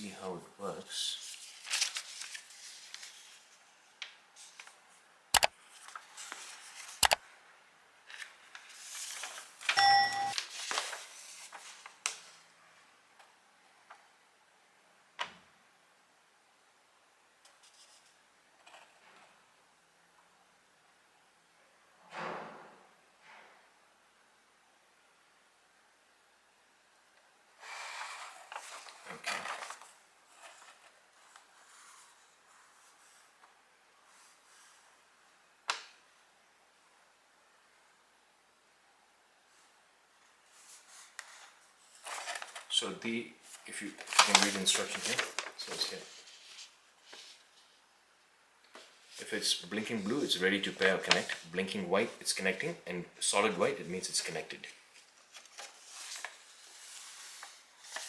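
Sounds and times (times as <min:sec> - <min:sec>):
packaging rustling: 0:01.2 - 0:03.7, 0:08.1 - 0:12.4, 0:28.1 - 0:31.5, 0:41.0 - 0:42.8, 0:43.5 - 0:47.5, 0:48.8 - 0:52.1
brief pitched tone: 0:09.8 - 0:10.4.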